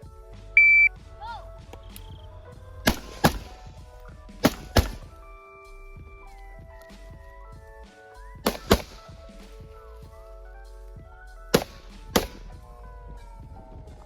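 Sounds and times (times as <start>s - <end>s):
background music: 0.0s - 14.0s
gunshots: 2.8s - 3.8s, 4.4s - 5.2s, 8.4s - 9.2s, 11.5s - 12.6s.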